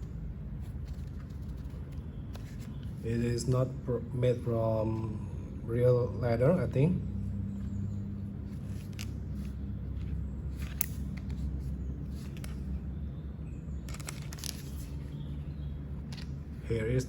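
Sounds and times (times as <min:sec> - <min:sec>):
steady low hum: 0:00.0 - 0:17.0
tool pouch handling clicks: 0:10.0 - 0:11.5.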